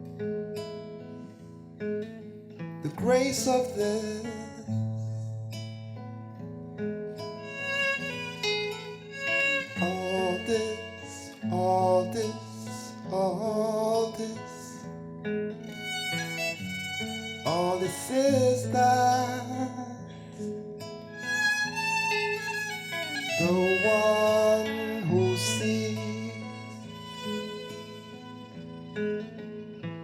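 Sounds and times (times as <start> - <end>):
slow instrumental music: 7.4 - 13.0, 15.6 - 19.9, 21.0 - 30.0.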